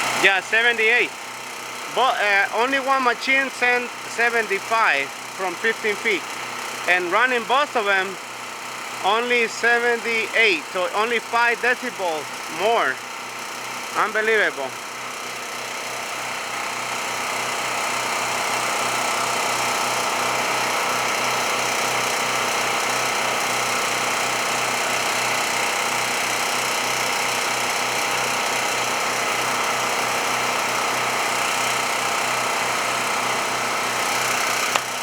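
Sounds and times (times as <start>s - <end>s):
portable generators droning: 0.0s - 15.1s.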